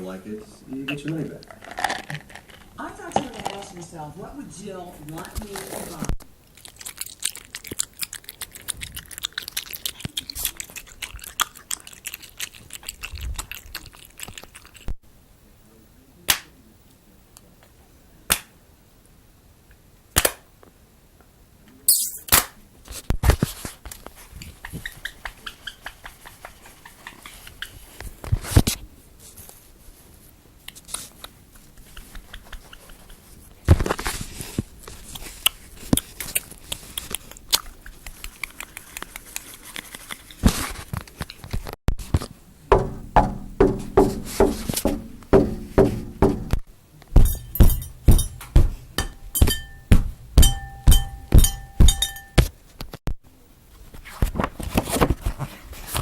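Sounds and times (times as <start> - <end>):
loud snaps: 16.3 - 16.6, 18.3 - 18.6, 20.1 - 20.5, 21.9 - 22.6.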